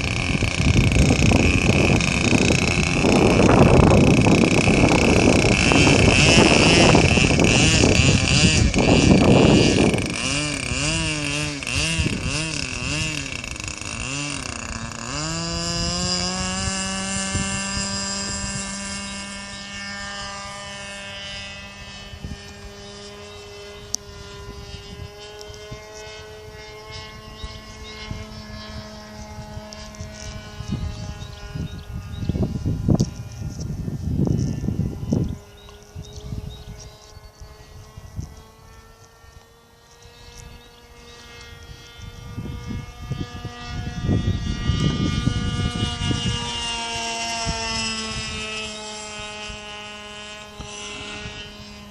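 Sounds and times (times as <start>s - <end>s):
model airplane engine whine: 0.0s - 51.9s
wind buffeting microphone: 0.0s - 51.9s.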